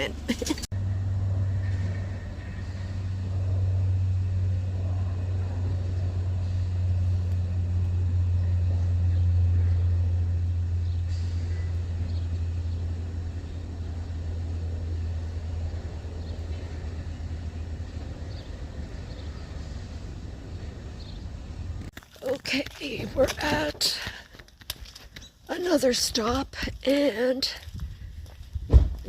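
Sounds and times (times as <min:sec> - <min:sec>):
engine and road drone: 0:00.0 - 0:22.0.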